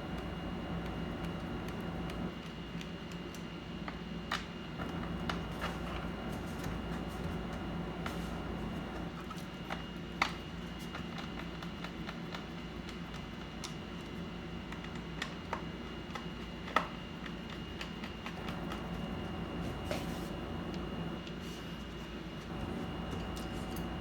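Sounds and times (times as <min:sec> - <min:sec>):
steady low hum: 0:00.0 - 0:02.4, 0:04.8 - 0:09.4, 0:18.3 - 0:24.0.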